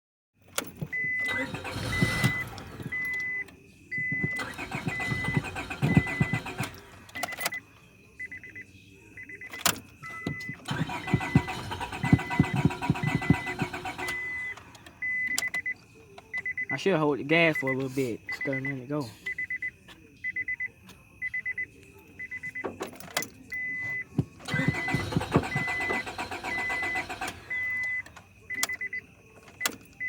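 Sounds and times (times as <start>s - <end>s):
car engine cranking: 0.5s - 7.8s, 9.5s - 15.7s, 22.6s - 30.0s
high-pitched warning chime beeping: 0.9s - 22.7s, 23.5s - 30.0s.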